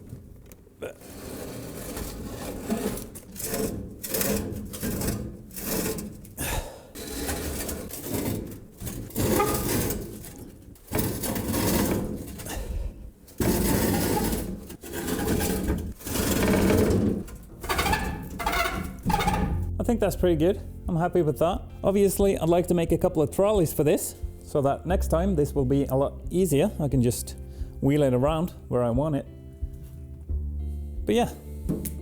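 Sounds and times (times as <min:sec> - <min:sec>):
heavy machine scraping across floor: 0:01.0 - 0:19.8.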